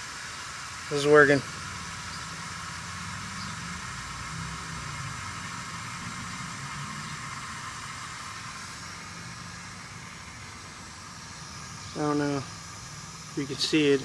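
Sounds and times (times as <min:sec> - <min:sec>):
aerosol can hissing: 0:00.0 - 0:14.0.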